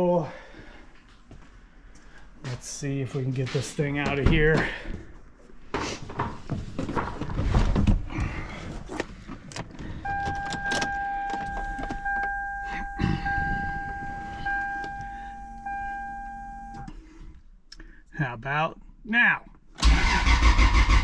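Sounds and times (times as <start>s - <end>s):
clunks and rustling: 3.4s - 15.2s
electronic warning tone beeping: 10.0s - 16.9s.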